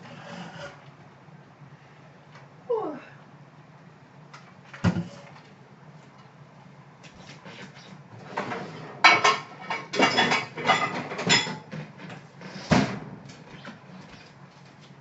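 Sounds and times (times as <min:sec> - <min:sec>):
dishes and cutlery clattering: 0:08.3 - 0:11.8.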